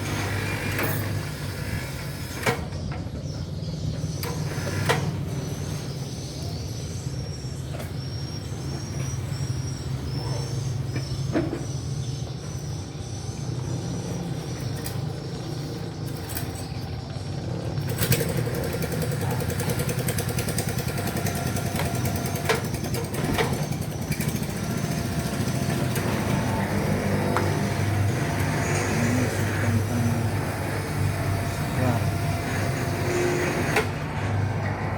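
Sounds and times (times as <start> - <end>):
engine humming: 7.1 - 34.9.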